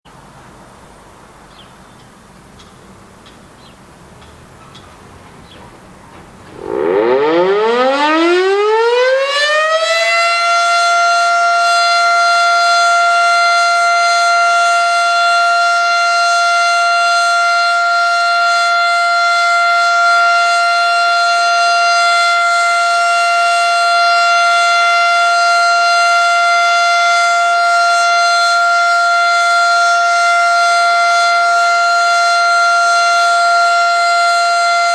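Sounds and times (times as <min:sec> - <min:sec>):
warning siren winding up: 0:06.5 - 0:11.4.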